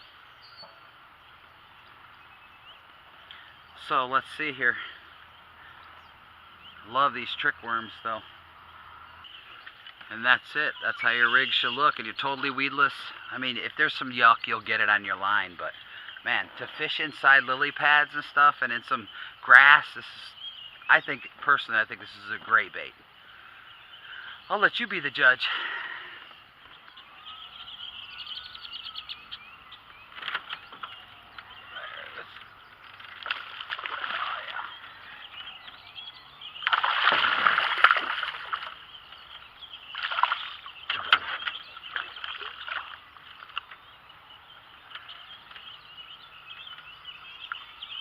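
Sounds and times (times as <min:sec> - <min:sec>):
birds calling: 0:00.0 - 0:48.0
water splashing: 0:31.6 - 0:35.6, 0:36.4 - 0:43.8.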